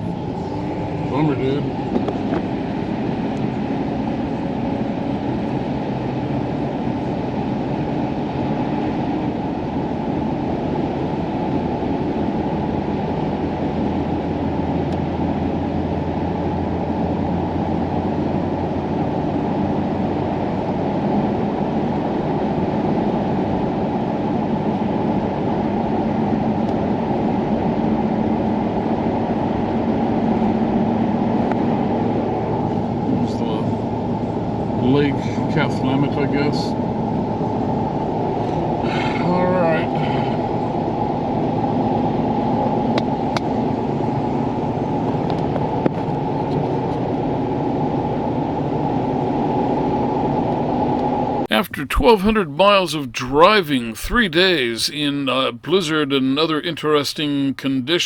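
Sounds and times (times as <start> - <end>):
engine and tyres rumbling: 0.0 - 8.5.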